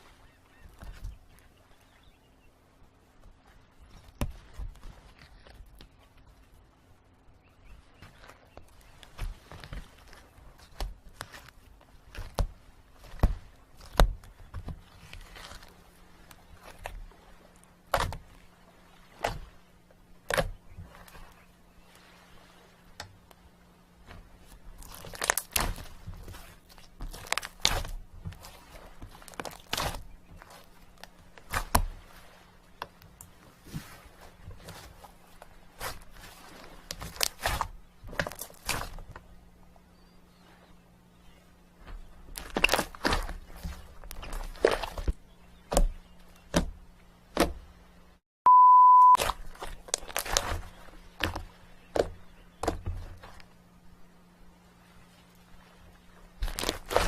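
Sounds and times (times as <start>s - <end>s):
crunching and crinkling: 3.2s - 6.5s, 7.9s - 39.8s, 41.3s - 47.8s, 49.2s - 57.0s
electronic censor beep: 48.5s - 49.2s.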